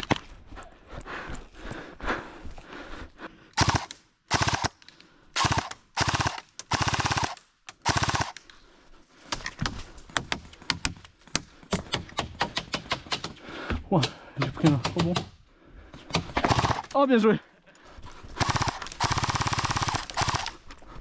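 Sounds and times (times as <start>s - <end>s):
airsoft gun full-auto bursts: 3.6s - 4.8s, 5.4s - 8.4s, 16.4s - 16.9s, 18.4s - 20.6s.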